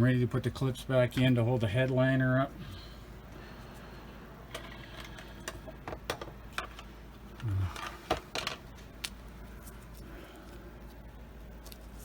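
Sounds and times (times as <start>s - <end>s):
man humming: 7.4s - 7.9s.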